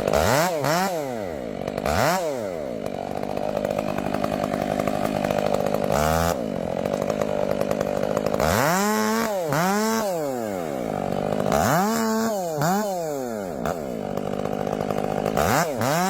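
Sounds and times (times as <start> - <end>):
chainsaw engine revving: 0.0 - 16.0.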